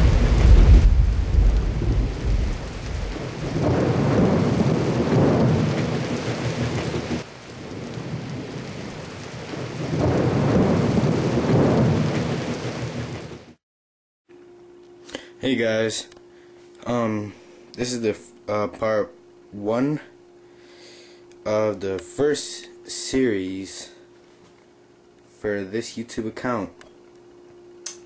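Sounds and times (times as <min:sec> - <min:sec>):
rolling thunder: 0:00.0 - 0:13.6
steady rain: 0:00.0 - 0:13.6.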